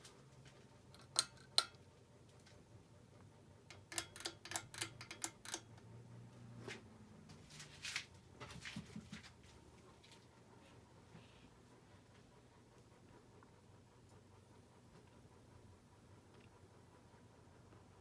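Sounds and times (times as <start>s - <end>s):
ceiling fan motor hum: 0.0s - 18.0s
sharp clicks and ticks: 3.7s - 5.9s.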